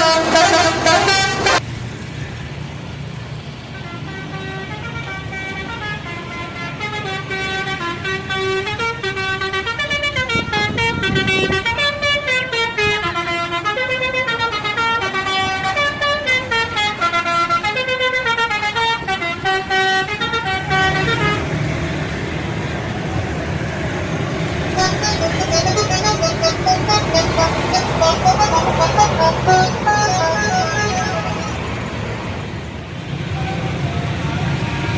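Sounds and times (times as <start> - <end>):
multi-tone air horn melody: 0.0 - 1.6, 3.8 - 21.5, 24.6 - 32.1
bus engine running: 0.0 - 34.9.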